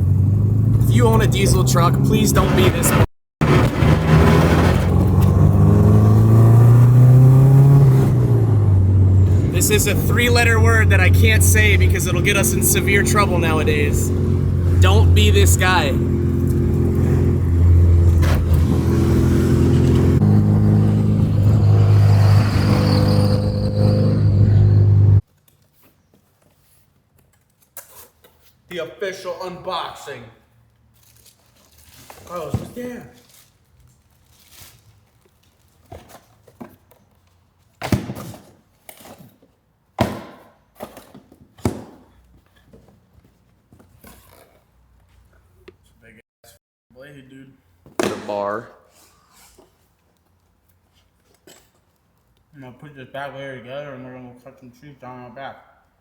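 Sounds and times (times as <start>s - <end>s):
vehicle engine droning: 0.0s - 25.2s.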